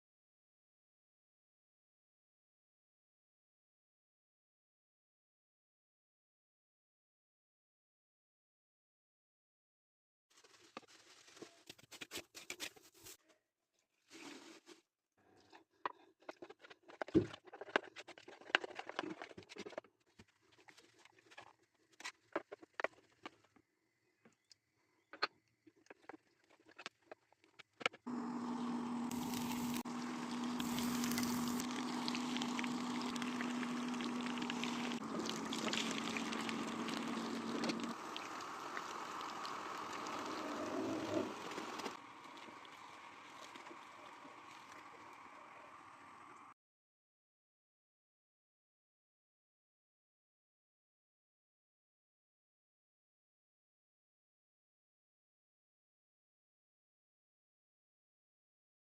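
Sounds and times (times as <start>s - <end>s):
food handling clicks and rustles: 15.4s - 23.6s
food sizzling in hot oil: 28.1s - 40.6s
steady low hum: 28.1s - 41.9s.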